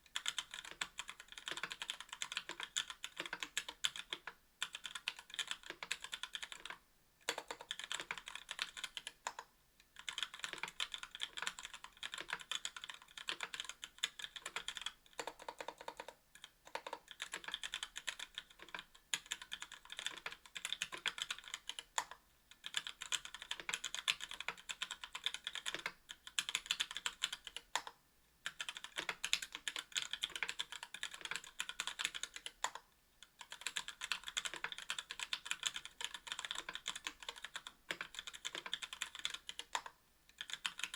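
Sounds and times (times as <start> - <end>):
mechanical keyboard typing: 0.1 - 40.9.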